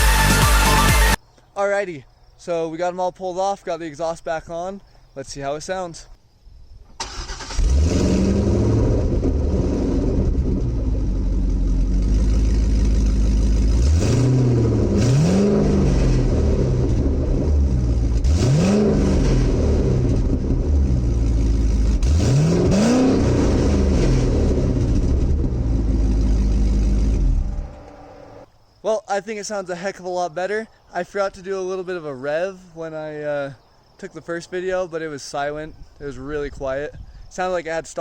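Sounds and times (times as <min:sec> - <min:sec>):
car engine starting: 0:07.0 - 0:28.5
car engine idling and revving: 0:07.4 - 0:28.5.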